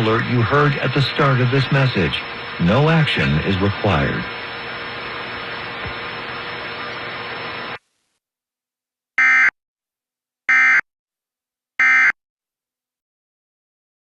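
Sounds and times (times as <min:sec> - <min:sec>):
modem-like data tone bursts: 0:00.0 - 0:07.8.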